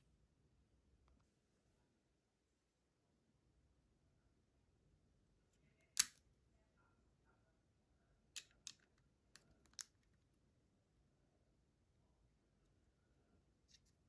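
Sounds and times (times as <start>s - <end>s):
plastic snap: 6.0s - 6.2s.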